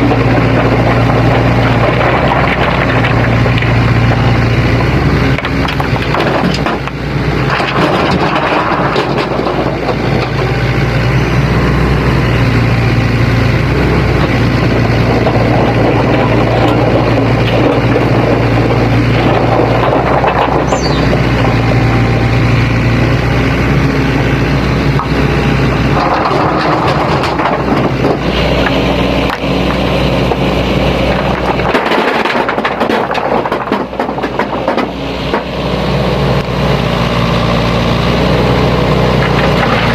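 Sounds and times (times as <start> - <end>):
excavator diesel engine working: 0.0 - 39.9.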